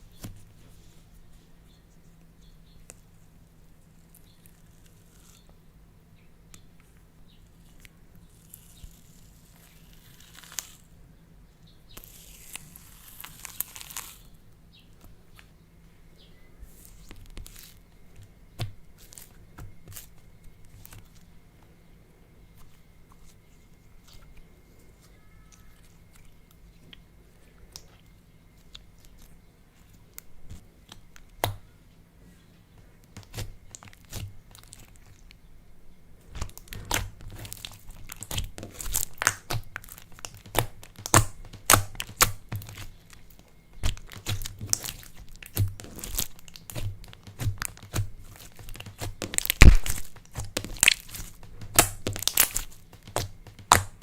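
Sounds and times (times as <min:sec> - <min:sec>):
slime crackling and popping: 0:07.6 - 0:10.9, 0:11.9 - 0:14.3, 0:16.8 - 0:21.2, 0:33.0 - 0:35.4, 0:36.3 - 0:54.0.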